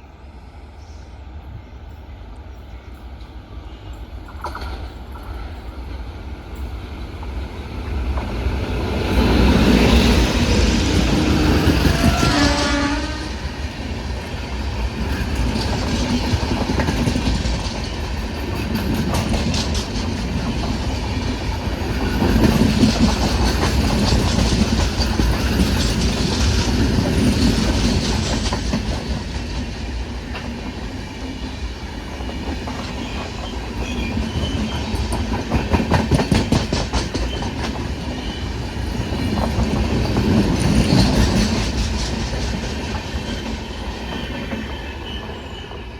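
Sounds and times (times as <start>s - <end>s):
train wheels clacking on rails: 2.5s - 45.9s
train horn blast: 11.2s - 13.4s.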